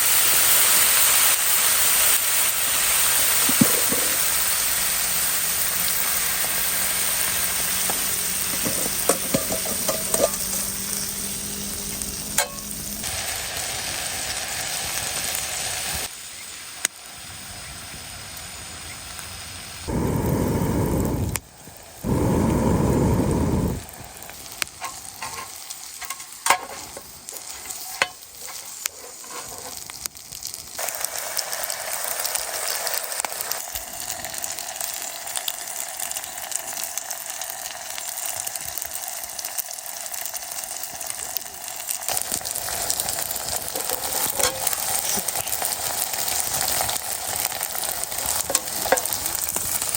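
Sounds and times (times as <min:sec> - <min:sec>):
food sizzling over fire: 0:00.0 - 0:49.9
loud rushing noise: 0:19.9 - 0:24.2.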